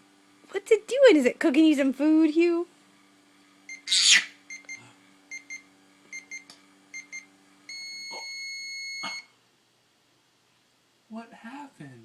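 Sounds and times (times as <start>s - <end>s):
microwave oven humming: 0.0s - 12.0s
long beep: 7.0s - 9.3s.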